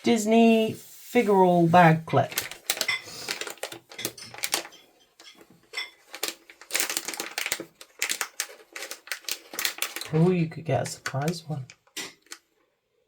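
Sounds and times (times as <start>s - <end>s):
packaging crinkling and clicking: 2.2s - 12.5s.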